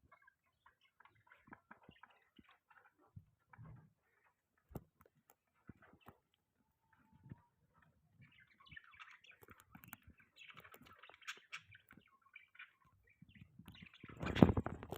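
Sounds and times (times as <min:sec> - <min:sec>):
budgerigars chirping: 0:00.1 - 0:03.1, 0:08.2 - 0:14.7
small clicks: 0:08.9 - 0:12.2.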